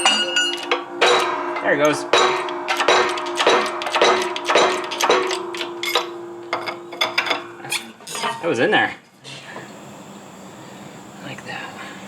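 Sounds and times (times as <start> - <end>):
ringing metallic clinks: 0.0 - 8.4.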